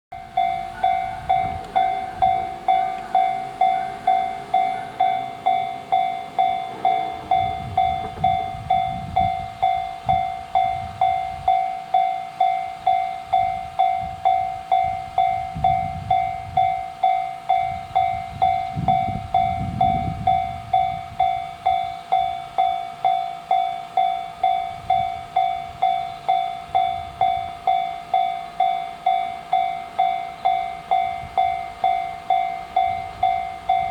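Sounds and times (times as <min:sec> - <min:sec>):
level crossing warning bell: 0:00.1 - 0:33.9
low rumble: 0:00.8 - 0:09.8.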